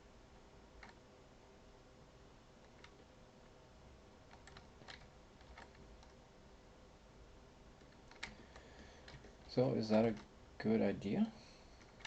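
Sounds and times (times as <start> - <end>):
room hum: 0.0 - 12.0
mouse and keyboard clicks: 0.8 - 1.0, 2.6 - 3.1, 4.3 - 6.2, 7.8 - 10.3.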